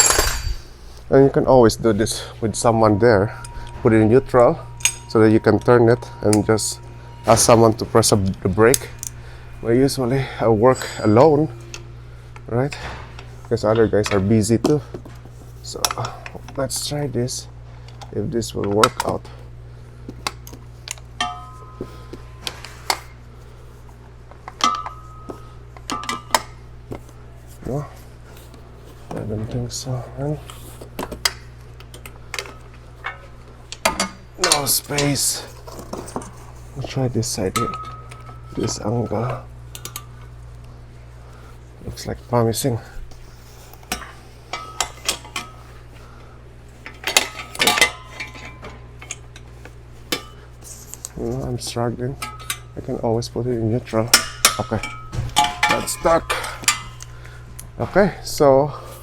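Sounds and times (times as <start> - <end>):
metal tools clinking: 0.0 - 1.0, 1.6 - 11.9, 20.9 - 23.2, 31.2 - 40.2, 43.8 - 45.8, 46.8 - 49.5, 52.2 - 52.9, 53.9 - 58.1.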